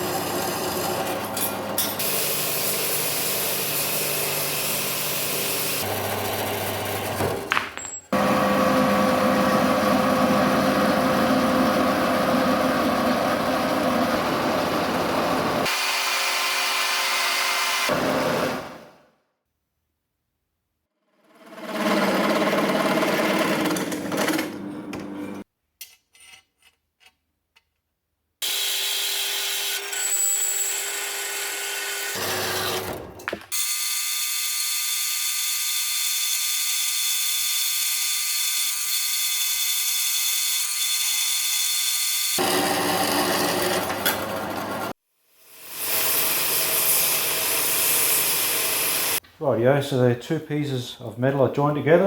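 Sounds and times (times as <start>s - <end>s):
power tools running: 0.0s - 7.5s, 8.1s - 18.8s, 28.4s - 33.8s, 42.2s - 49.2s.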